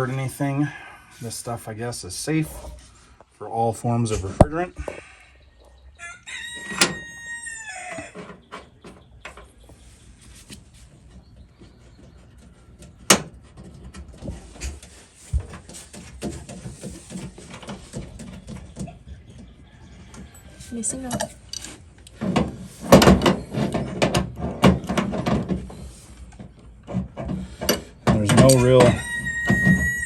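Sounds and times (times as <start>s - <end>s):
rooster crowing: 4.8s - 8.2s, 28.5s - 30.0s.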